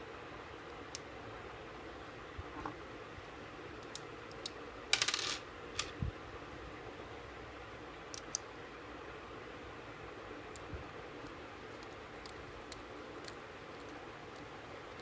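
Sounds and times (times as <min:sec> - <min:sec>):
clicks and taps of small parts: 0:03.8 - 0:05.9, 0:08.1 - 0:08.4, 0:10.5 - 0:15.0
small metal part rattling: 0:04.9 - 0:05.9.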